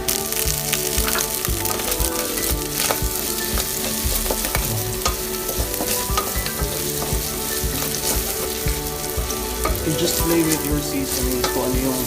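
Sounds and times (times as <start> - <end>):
food sizzling in hot oil: 0.0 - 12.0.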